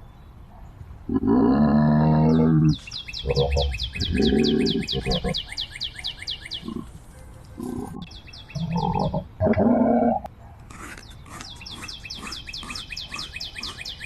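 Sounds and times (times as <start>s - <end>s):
animal grunts and growls: 1.1s - 5.4s, 6.6s - 7.0s, 7.6s - 14.0s.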